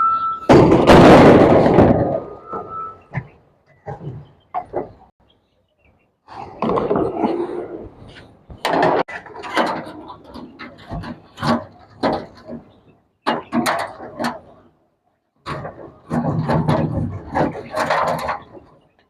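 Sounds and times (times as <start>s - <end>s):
knocks and clatter on metal parts: 0.5s - 5.1s, 8.5s - 14.7s, 15.4s - 19.0s.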